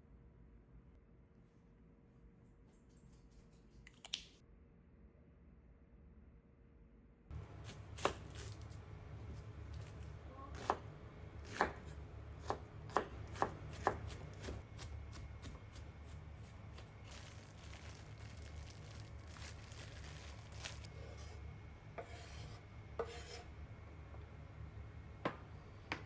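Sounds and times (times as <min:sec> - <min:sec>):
knife chopping on cutting board: 0:07.6 - 0:08.7, 0:09.7 - 0:16.9.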